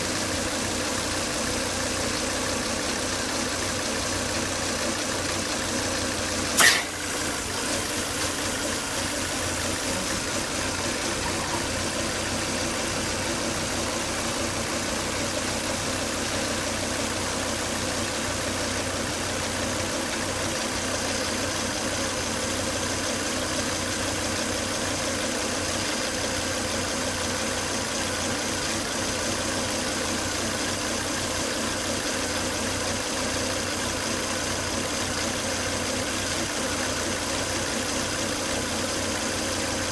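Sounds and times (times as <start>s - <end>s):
car engine idling: 0.0s - 39.9s
sharp click: 6.6s - 7.0s.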